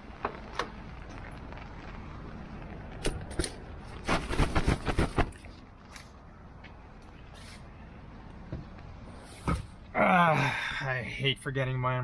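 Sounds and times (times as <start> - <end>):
rain hiss: 0.0 - 4.0.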